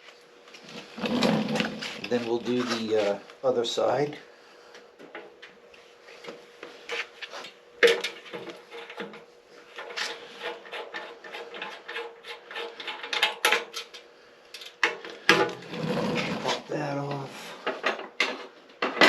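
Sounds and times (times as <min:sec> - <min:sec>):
faint steady hum: 0:00.0 - 0:19.0
hand tools clicking and scraping metal: 0:06.9 - 0:16.6.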